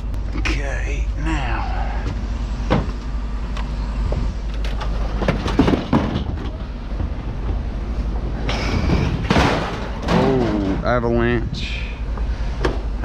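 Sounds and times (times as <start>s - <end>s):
steady low rumble: 0.0s - 13.0s
scrap metal clanking: 8.4s - 10.8s.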